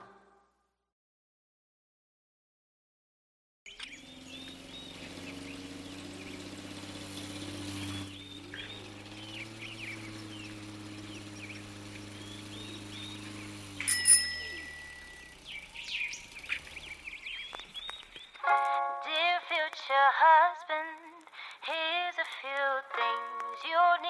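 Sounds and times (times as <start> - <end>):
birds chirping: 3.7 - 19.7.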